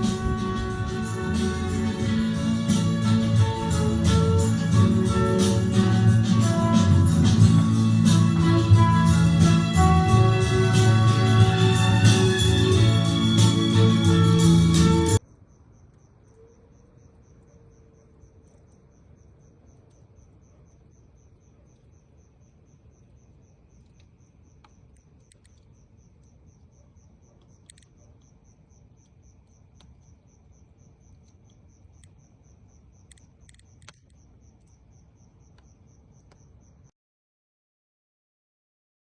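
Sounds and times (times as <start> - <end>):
crickets chirping: 0.0 - 36.9
faint clicks: 23.8 - 25.8, 27.4 - 28.4, 33.0 - 34.7.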